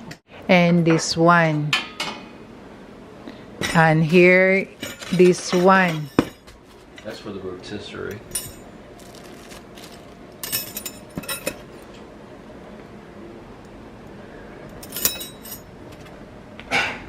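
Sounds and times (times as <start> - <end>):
metal parts clinking: 4.7 - 6.5, 8.2 - 11.7, 14.7 - 16.1.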